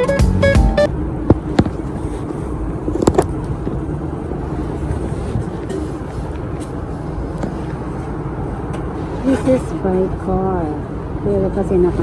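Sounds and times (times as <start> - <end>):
road rumble: 0.0 - 12.0.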